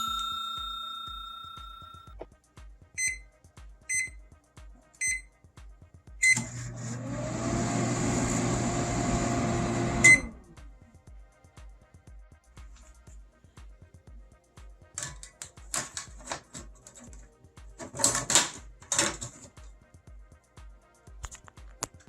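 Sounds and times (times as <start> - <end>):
microwave keypad beeps: 0.0 - 2.2, 3.0 - 3.3, 3.9 - 4.2, 5.0 - 5.3, 6.2 - 6.5, 10.0 - 10.3
microwave hum and fan noise: 6.2 - 10.4.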